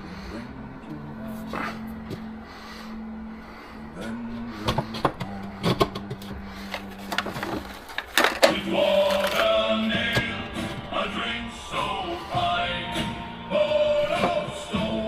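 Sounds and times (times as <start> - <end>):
music with male singing: 0.0 - 15.0
steady low hum: 0.0 - 15.0
knocks and clatter of woodworking: 4.7 - 9.4.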